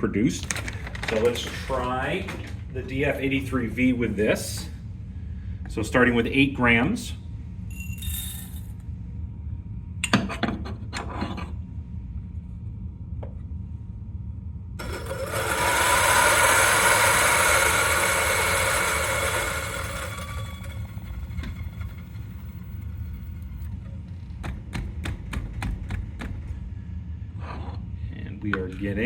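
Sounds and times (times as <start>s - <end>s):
coffee grinder grinding beans: 14.8s - 23.6s.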